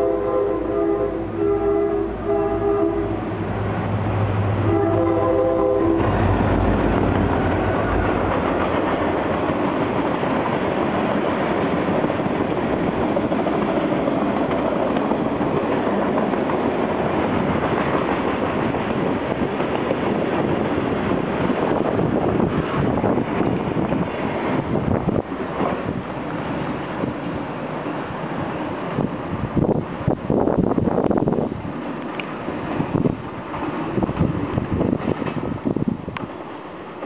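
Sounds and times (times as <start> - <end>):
locomotive air horn: 0.0 - 3.5, 4.5 - 6.3
locomotive engine drone: 0.0 - 29.0
train wheels rattling on rail: 3.1 - 37.0.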